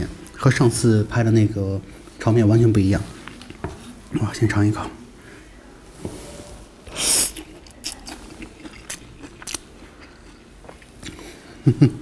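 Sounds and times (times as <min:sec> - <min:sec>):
soft chewing and mouth clicks: 0:01.9 - 0:04.4, 0:07.1 - 0:11.5
noodle slurp: 0:06.9 - 0:09.3.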